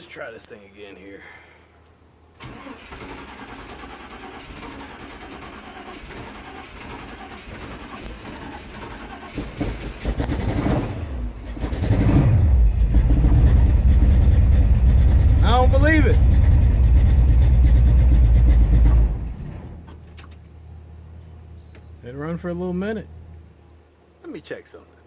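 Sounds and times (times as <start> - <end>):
engine cranking on starter: 2.4 - 20.4
car engine running loud: 5.9 - 19.8.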